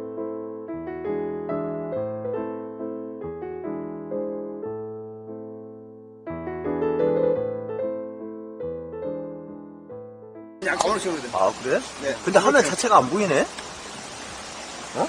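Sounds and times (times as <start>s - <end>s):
piano chords: 0.0s - 13.5s.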